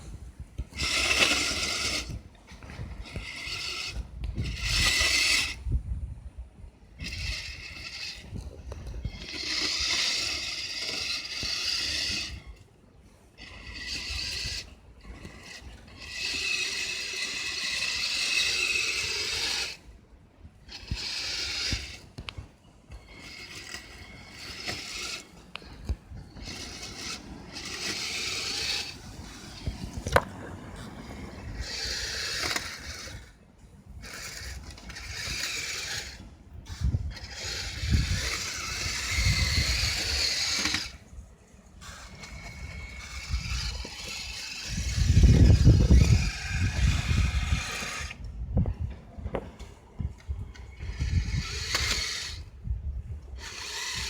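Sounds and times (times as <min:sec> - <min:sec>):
toy vehicle motor whirring: 0:00.0 - 0:54.0.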